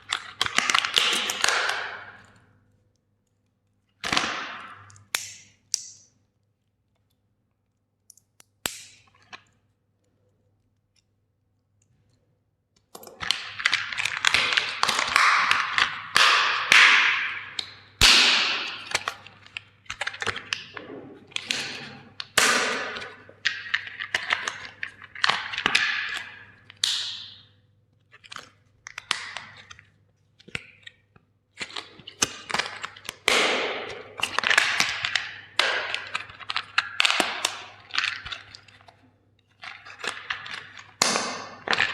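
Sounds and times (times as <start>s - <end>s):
hammer smashing plastic toys: 13.2s - 19.2s.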